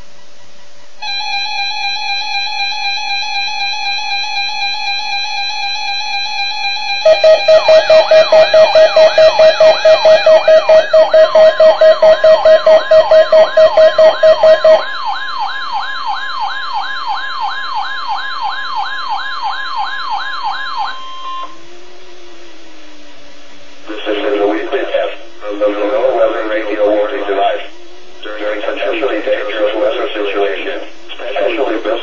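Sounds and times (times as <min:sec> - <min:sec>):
loud alarm beeping: 0:01.0 - 0:21.6, 0:23.9 - 0:32.0
rising whoop alarm: 0:01.0 - 0:21.8.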